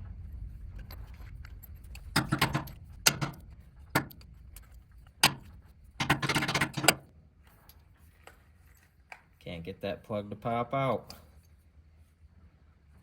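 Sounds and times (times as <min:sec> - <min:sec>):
metal tools clinking: 0:00.8 - 0:07.0.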